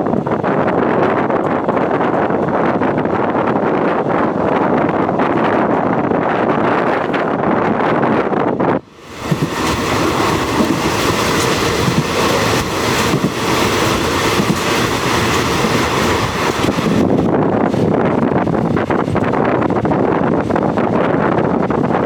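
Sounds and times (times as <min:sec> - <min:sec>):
train wheels rumbling on rail: 0:00.0 - 0:22.0
wind noise on microphone: 0:00.0 - 0:22.0.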